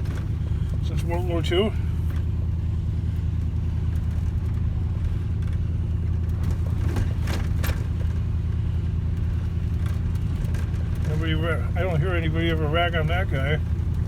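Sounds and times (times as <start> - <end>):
vehicle engine humming: 0.0 - 14.0
light knocks and rattles: 5.3 - 8.3.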